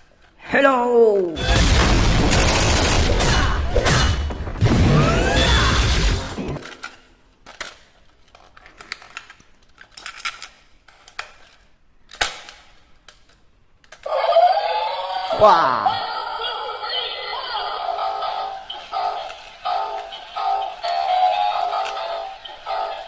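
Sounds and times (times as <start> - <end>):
plastic toy clicks and rattles: 6.6 - 14.1, 18.5 - 23.0.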